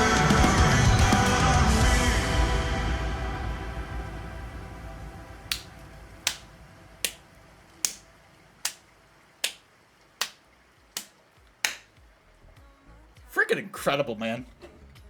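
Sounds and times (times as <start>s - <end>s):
sharp snaps: 5.5s - 12.0s
faint music: 10.6s - 15.0s.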